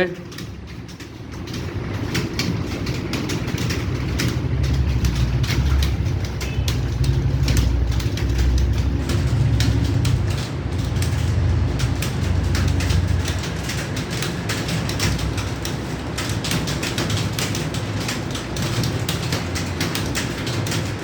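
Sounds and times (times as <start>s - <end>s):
low steady rumble: 0.0s - 14.3s
keyboards clattering: 0.0s - 21.0s.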